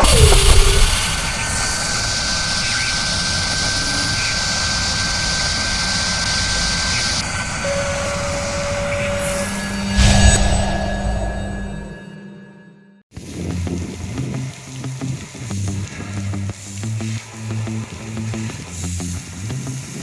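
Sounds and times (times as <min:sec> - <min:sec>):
high hiss: 0:00.0 - 0:11.3
industrial machinery high whine: 0:00.0 - 0:13.0.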